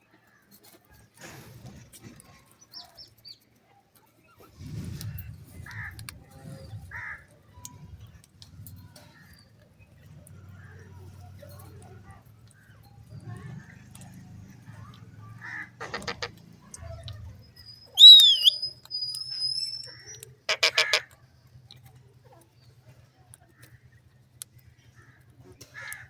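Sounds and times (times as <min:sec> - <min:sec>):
high parrot whistle: 0:17.7 - 0:20.0
parrot chattering: 0:18.0 - 0:18.6
parrot squawk: 0:18.0 - 0:18.6, 0:20.5 - 0:21.1.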